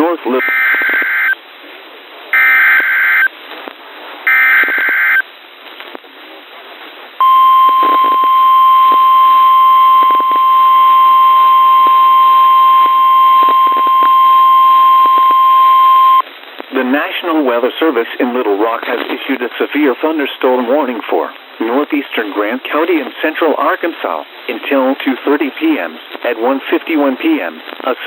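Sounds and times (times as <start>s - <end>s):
radio static crackle: 0.0s - 1.8s, 2.4s - 28.0s
steady warning alarm tone: 7.2s - 16.2s.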